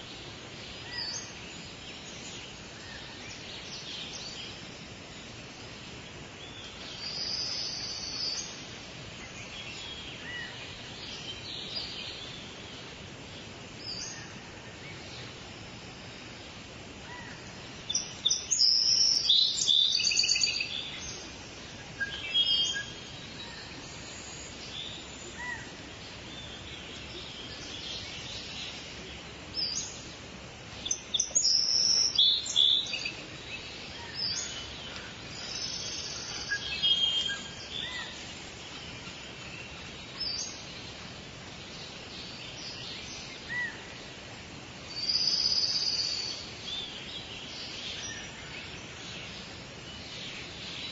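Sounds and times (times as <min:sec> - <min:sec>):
forest ambience hiss: 0:00.0 - 0:50.9
songbirds singing and calling: 0:00.0 - 0:50.9.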